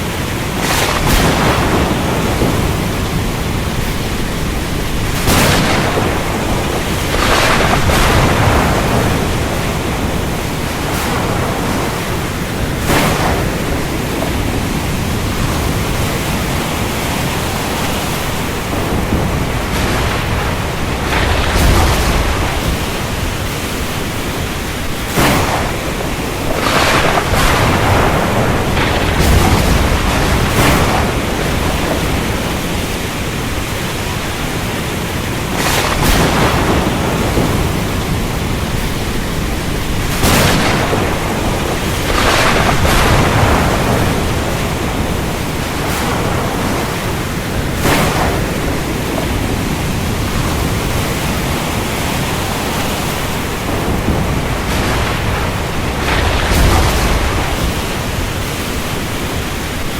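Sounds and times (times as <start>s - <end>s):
heavy rain: 0.0s - 59.9s
low thunder rumbling: 0.0s - 59.9s
thunder cracks: 0.0s - 59.9s.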